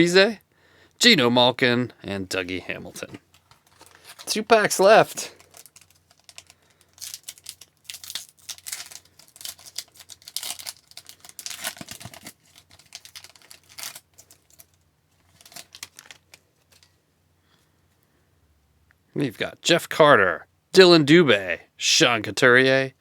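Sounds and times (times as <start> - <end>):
cards being handled: 2.9 - 16.9
wrapper tearing and crinkling: 3.3 - 16.9.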